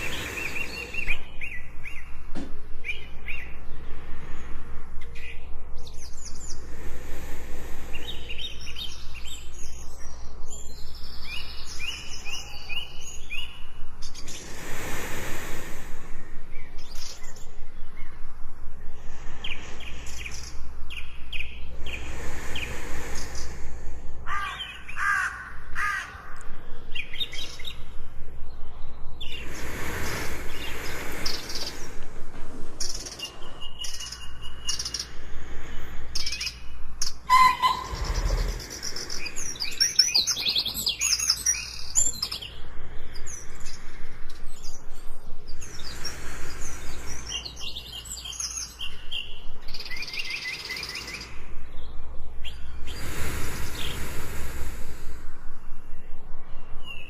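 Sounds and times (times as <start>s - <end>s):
faint steady hiss: 0.0s - 25.0s, 26.3s - 37.3s, 48.5s - 57.0s
birds chirping and trilling: 0.0s - 57.0s.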